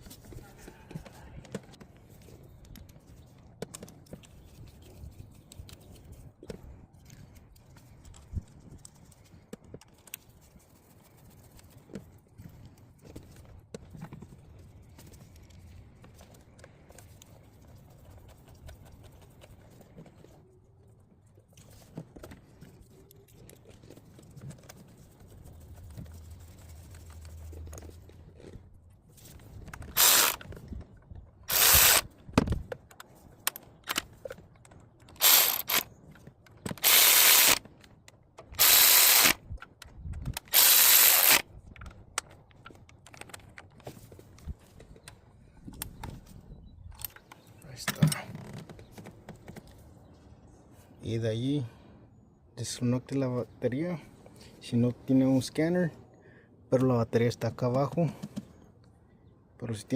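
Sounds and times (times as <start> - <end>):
ratchet wrench clicking: 30.0 - 30.4, 31.5 - 32.0, 35.2 - 35.8, 36.8 - 37.6, 38.6 - 39.4, 40.5 - 41.4.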